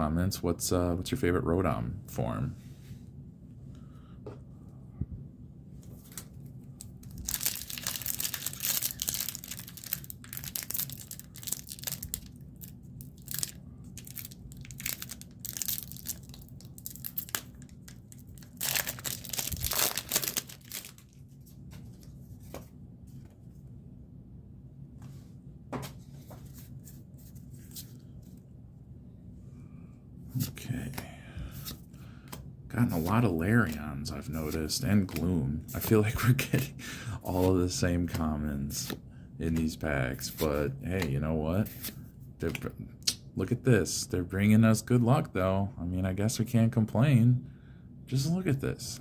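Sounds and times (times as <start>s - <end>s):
wrappers torn and crinkled: 6.8s - 21.2s.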